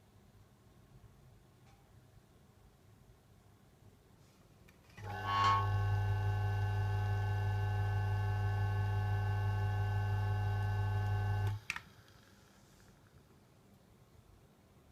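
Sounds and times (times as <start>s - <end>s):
ventilation fan motor hum: 5.0s - 13.3s.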